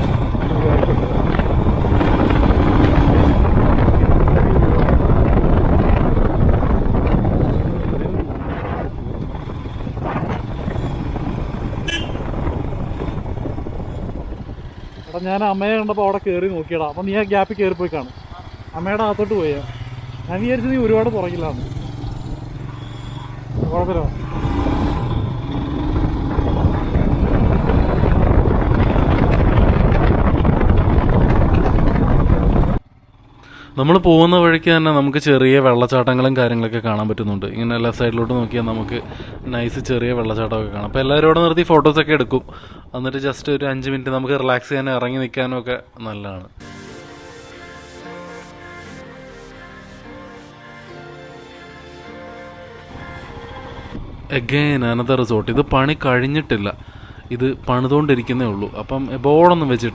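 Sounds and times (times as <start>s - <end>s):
wind buffeting microphone: 0.0s - 15.9s, 18.0s - 32.8s, 37.2s - 44.3s, 52.9s - 59.9s
motorcycle engine running: 0.0s - 35.2s, 36.5s - 41.3s, 46.6s - 59.9s.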